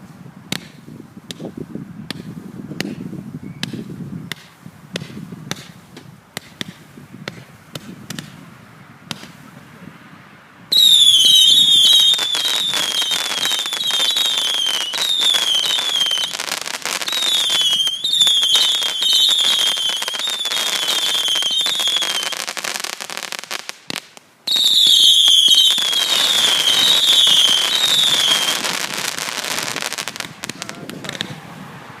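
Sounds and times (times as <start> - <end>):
fireworks crackling and popping: 0.0 - 8.5, 9.1 - 9.6, 10.7 - 31.7
firework whistles: 10.7 - 23.7, 24.5 - 31.6.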